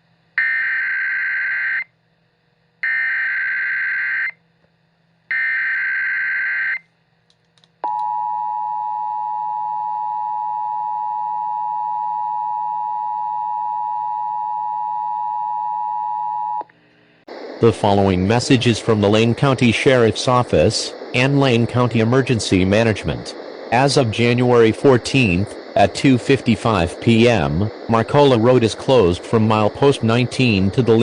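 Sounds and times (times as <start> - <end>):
header data tone bursts: 17.3 - 31.0.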